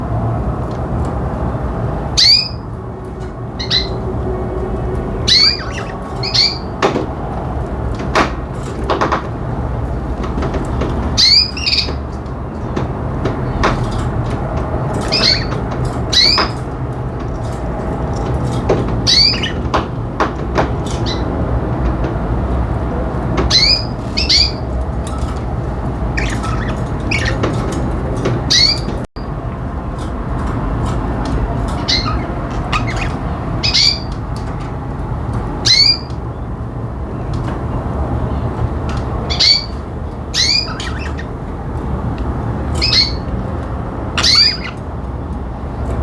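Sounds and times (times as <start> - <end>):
budgerigars chirping: 2.2 - 2.7, 3.6 - 4.0, 5.2 - 7.0, 11.1 - 12.7, 14.9 - 16.7, 18.2 - 19.8, 20.8 - 21.3, 23.4 - 25.4, 26.1 - 27.8, 28.5 - 29.0, 31.6 - 34.2, 35.6 - 36.2, 39.2 - 41.4, 42.8 - 43.4, 44.1 - 44.9.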